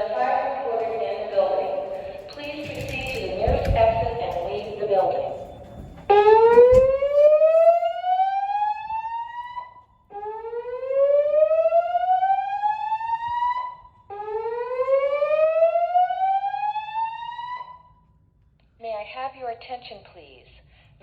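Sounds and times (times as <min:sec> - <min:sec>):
fire alarm whoop tone: 0:04.4 - 0:18.0.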